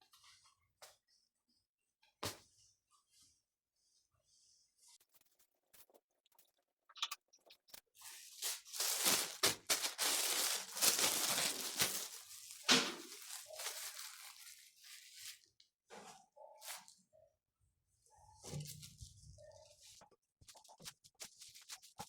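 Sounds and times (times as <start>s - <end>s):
wrapper crinkling and rustling: 8.0s - 15.7s.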